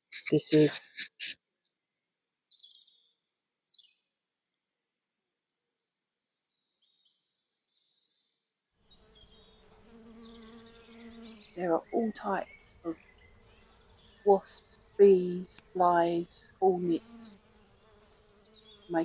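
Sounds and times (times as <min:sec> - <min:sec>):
faint high bird chirps: 0:00.0 - 0:04.0
bees buzzing: 0:09.0 - 0:19.0.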